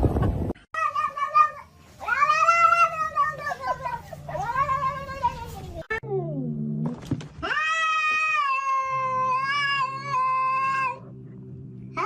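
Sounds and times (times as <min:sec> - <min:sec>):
low steady hum: 0:08.8 - 0:12.0.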